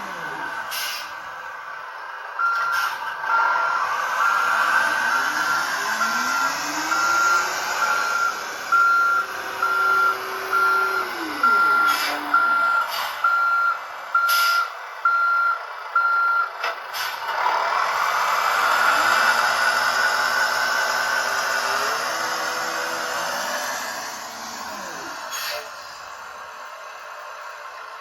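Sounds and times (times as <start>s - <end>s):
simulated engine tone: 0.0s - 1.2s, 2.4s - 16.5s, 18.7s - 26.0s
short hisses: 0.7s - 1.2s
reversing beeps: 2.4s - 16.6s.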